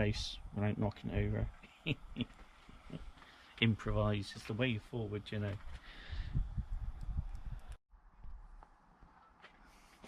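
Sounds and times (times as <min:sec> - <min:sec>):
wind buffeting microphone: 0:05.6 - 0:08.4.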